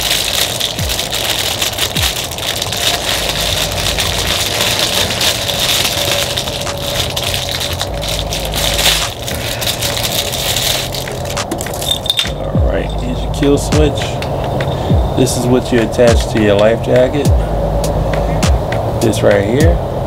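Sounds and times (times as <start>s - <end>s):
plastic parts crackling and rattling: 0.0s - 13.0s.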